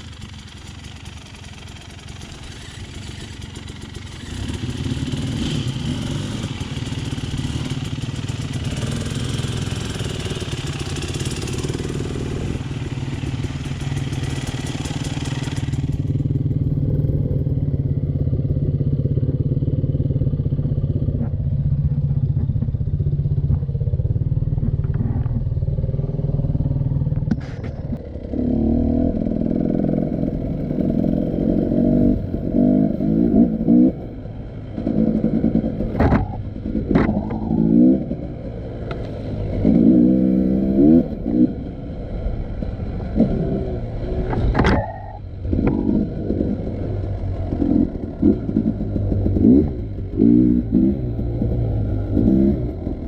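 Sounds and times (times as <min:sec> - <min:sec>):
motorcycle engine running: 0:00.0 - 0:53.0
click: 0:38.8 - 0:39.2.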